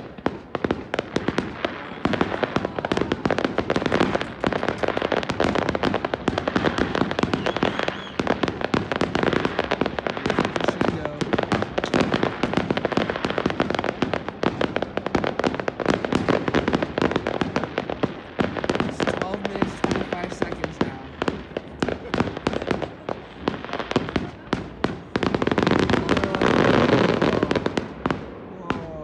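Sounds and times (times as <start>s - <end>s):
rapid fireworks bangs: 0.0s - 29.0s.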